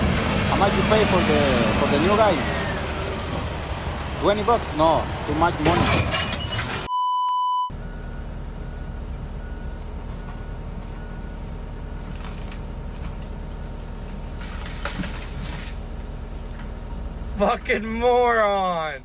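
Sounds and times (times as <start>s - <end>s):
heavy machine running: 0.0s - 6.9s
loud pure-tone bleep: 6.3s - 8.0s
faint repeating beep: 6.9s - 7.8s.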